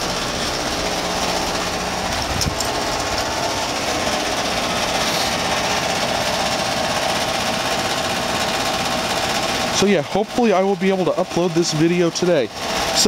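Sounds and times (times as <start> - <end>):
heat pump humming: 0.0 - 13.0
loose part rattling: 2.0 - 3.4.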